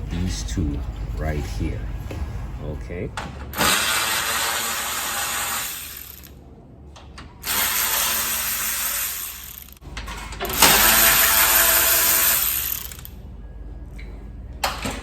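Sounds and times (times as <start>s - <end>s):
handheld power tool running: 3.6s - 6.3s, 7.4s - 9.8s, 10.5s - 13.1s.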